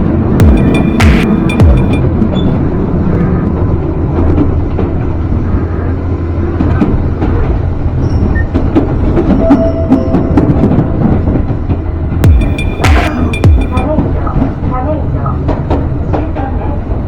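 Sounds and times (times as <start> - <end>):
train rumbling on track: 0.0 - 17.0
level crossing bell ringing: 0.4 - 2.0, 9.4 - 11.2, 12.3 - 13.9.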